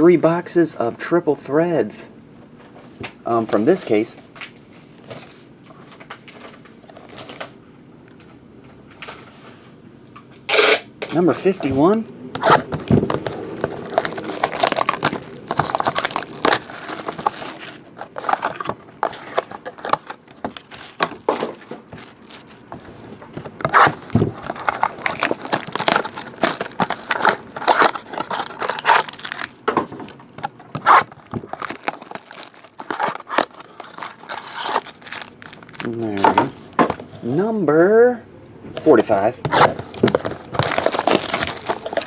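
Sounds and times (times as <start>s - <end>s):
plastic wrapping crinkling: 12.4s - 37.0s, 38.8s - 42.0s.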